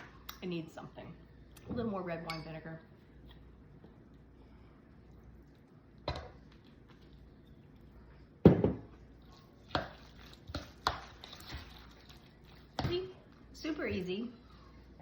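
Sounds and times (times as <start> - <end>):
kitchenware knocking on counter: 8.4 - 8.8.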